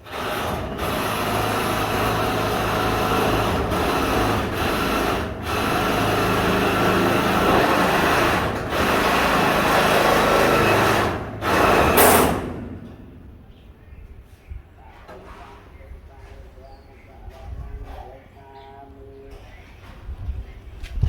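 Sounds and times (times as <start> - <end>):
small power tool running: 0.0 - 12.6.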